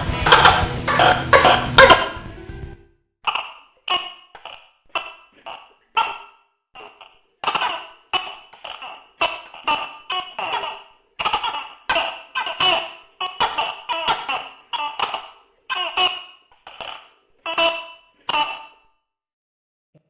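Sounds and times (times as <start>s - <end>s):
gecko croaking calls: 0.0s - 2.2s, 6.8s - 18.8s.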